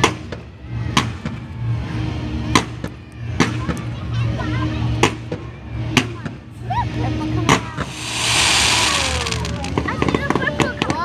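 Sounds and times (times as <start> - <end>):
fireworks bangs: 7.8 - 10.0
people talking: 8.8 - 11.0.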